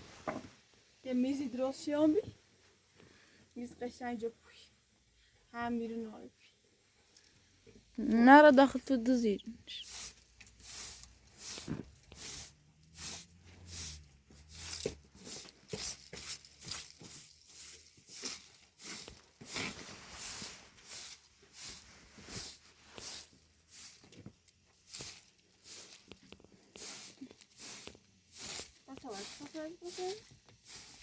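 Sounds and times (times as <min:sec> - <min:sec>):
rhythmic scraping strokes: 0:27.7 - 0:31.0.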